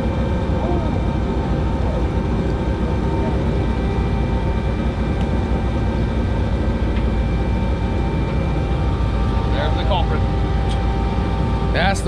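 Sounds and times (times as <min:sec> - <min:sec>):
boat engine running: 0:00.0 - 0:12.0
faint whining tones: 0:00.0 - 0:12.0.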